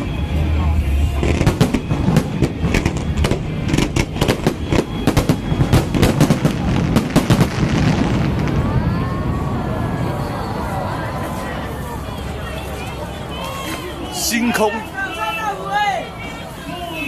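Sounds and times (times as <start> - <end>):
fireworks bangs and crackling: 0.0 - 11.4
crowd voices: 0.0 - 17.0.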